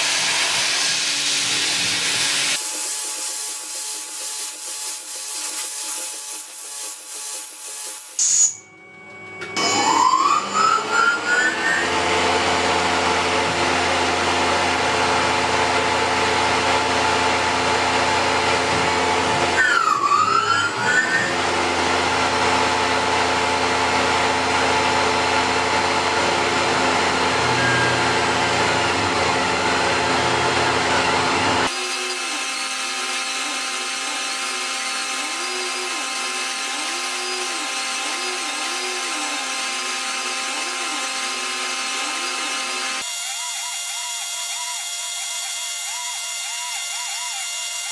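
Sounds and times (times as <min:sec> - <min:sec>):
milling machine whine: 0:00.0 - 0:47.9
machine hum with wavering tone: 0:08.2 - 0:11.8, 0:25.8 - 0:31.6.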